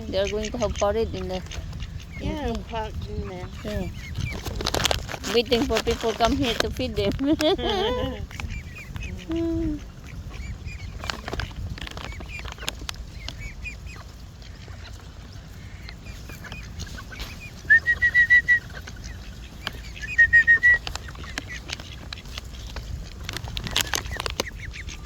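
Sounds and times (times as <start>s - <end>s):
duck honk: 0.0s - 4.5s, 13.2s - 23.0s
birds chirping: 0.0s - 25.0s
loud repeated bird calls: 7.6s - 25.0s.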